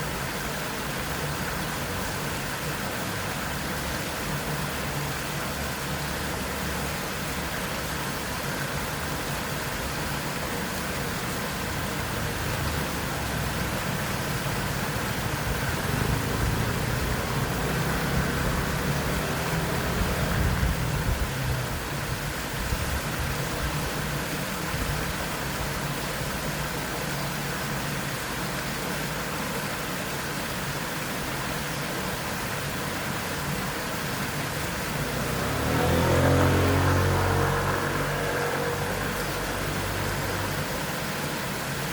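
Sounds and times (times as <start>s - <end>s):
waterfall rushing: 0.0s - 41.9s
passing motorcycle rumble: 15.1s - 21.8s, 34.8s - 40.7s.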